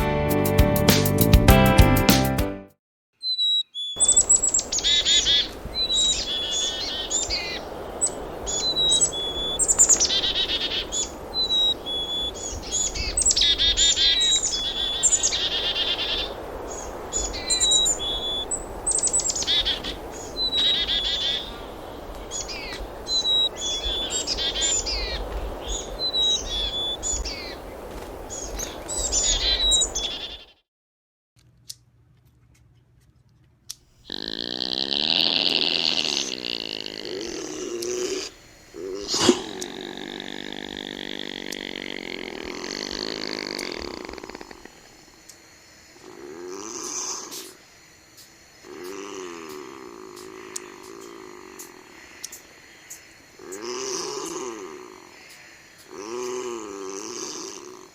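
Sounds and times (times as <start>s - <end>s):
bird calling: 3.2s - 30.6s, 34.0s - 45.4s
background hiss: 4.0s - 30.5s, 32.4s - 57.9s.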